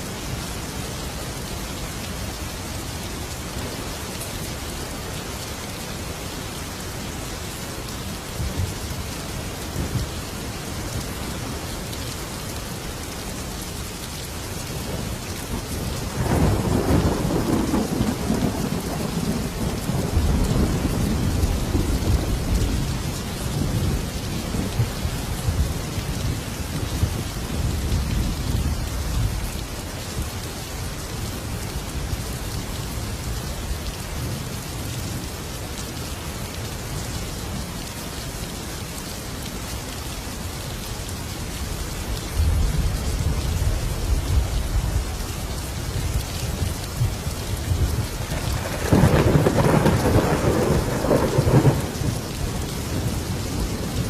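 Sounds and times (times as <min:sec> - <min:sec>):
heavy rain falling: 0:00.0 - 0:54.0
rolling thunder: 0:15.8 - 0:23.0, 0:47.0 - 0:54.0.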